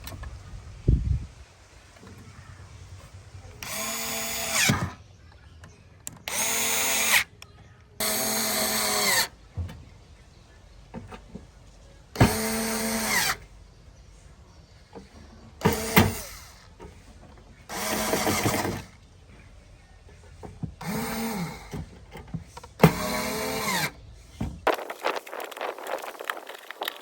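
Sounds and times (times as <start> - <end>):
power drill whirring: 3.6 - 5.0, 6.2 - 7.3, 8.0 - 9.3, 12.2 - 13.4, 15.6 - 16.7, 17.7 - 19.0, 20.8 - 21.9, 22.8 - 24.0.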